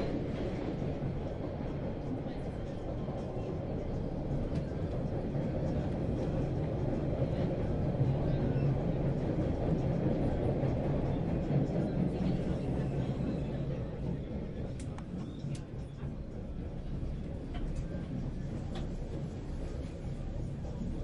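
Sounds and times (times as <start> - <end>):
train rumbling in motion: 0.0 - 21.0.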